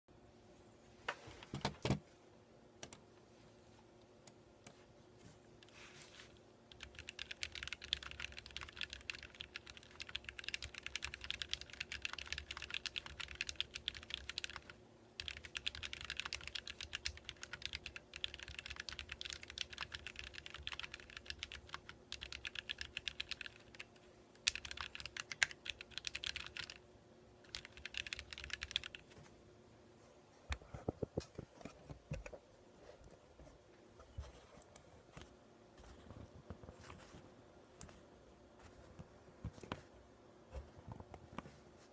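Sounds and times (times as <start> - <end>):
mechanical keyboard typing: 6.7 - 26.8, 27.4 - 29.0.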